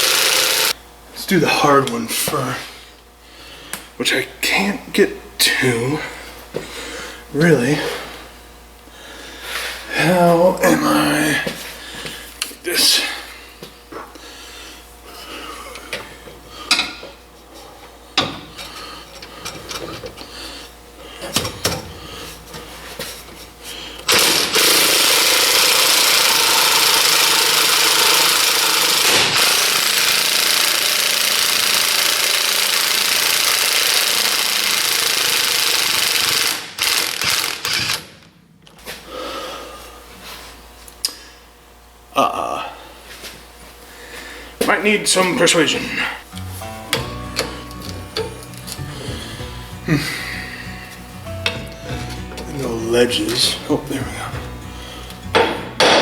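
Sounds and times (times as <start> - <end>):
impact wrench hammering: 0.0 - 0.8, 24.1 - 38.1, 46.8 - 56.0.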